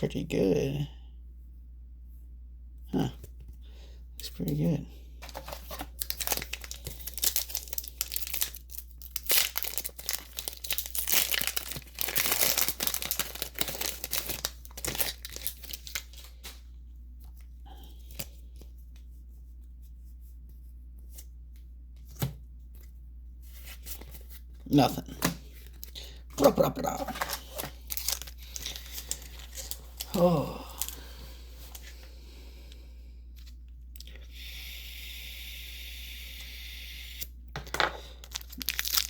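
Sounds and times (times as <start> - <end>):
foil wrapper tearing and crinkling: 5.2 - 16.6, 25.6 - 31.0, 38.2 - 39.0.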